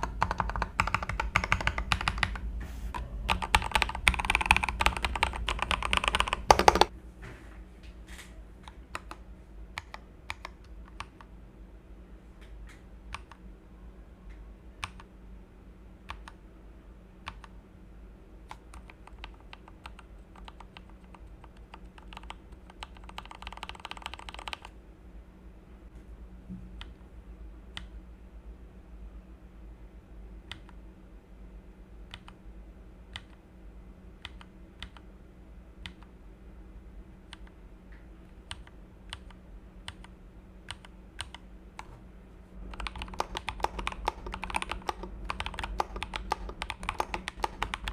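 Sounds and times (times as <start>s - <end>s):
mechanical keyboard typing: 0.0s - 6.9s, 8.7s - 11.3s, 14.8s - 15.1s, 17.2s - 17.5s, 18.5s - 24.7s, 34.2s - 35.1s, 38.5s - 42.0s, 42.7s - 47.9s.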